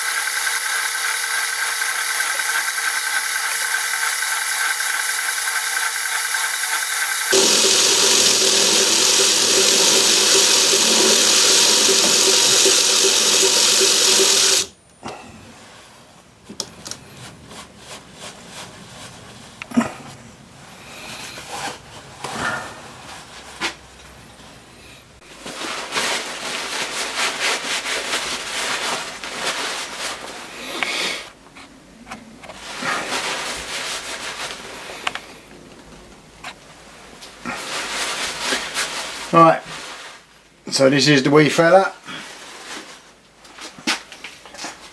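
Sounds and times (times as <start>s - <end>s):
lathe running: 0.0s - 14.8s.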